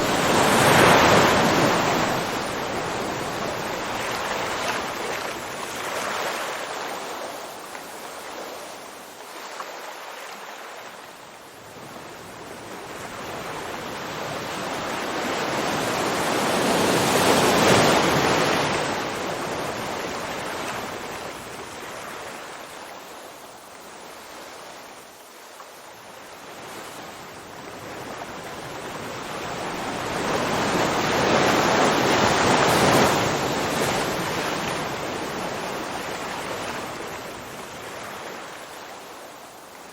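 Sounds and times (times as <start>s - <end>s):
ocean surf washing in: 0.0s - 6.9s.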